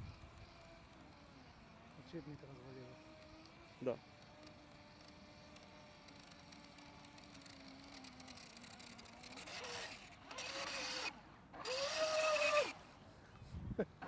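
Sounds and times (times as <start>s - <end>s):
electric motor whine: 9.2s - 12.8s.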